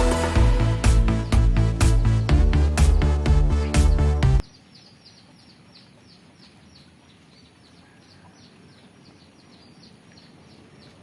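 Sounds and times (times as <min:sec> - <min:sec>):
electronic background music: 0:00.0 - 0:04.4
bird chirping: 0:03.6 - 0:11.0.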